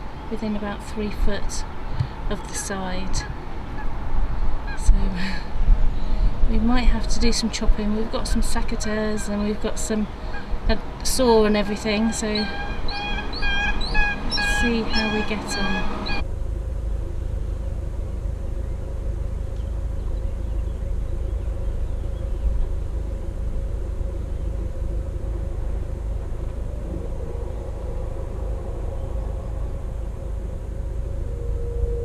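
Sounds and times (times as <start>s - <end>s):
boat engine running: 6.8s - 16.2s.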